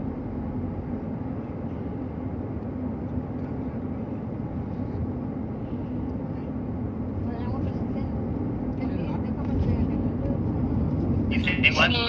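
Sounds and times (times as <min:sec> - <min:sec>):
vehicle road and engine rumble: 0:00.0 - 0:12.0.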